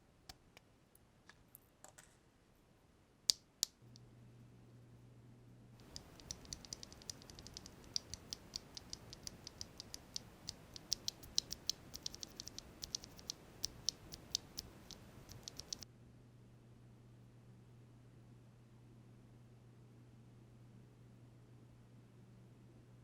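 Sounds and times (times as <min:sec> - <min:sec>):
mechanical keyboard typing: 0:05.8 - 0:15.8.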